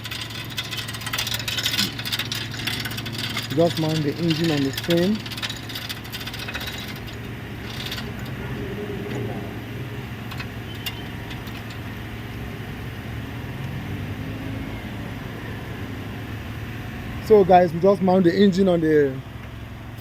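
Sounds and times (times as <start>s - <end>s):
light clicks of metal parts: 0.0s - 11.9s
engine running: 0.0s - 20.0s.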